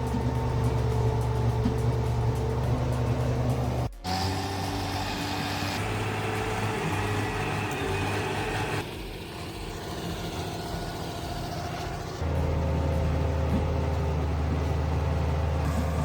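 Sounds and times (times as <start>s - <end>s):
heavy machine engine humming: 0.0s - 16.0s.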